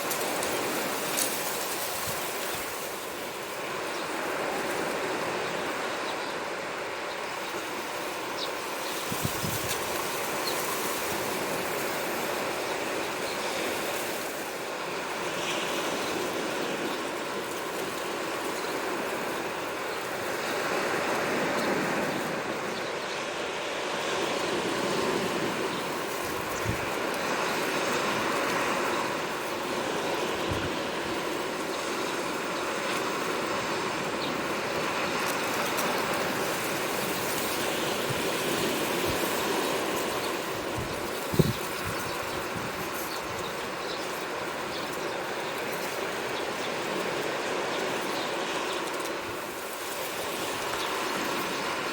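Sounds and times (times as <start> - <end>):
sea waves washing onto shore: 0.0 - 51.9.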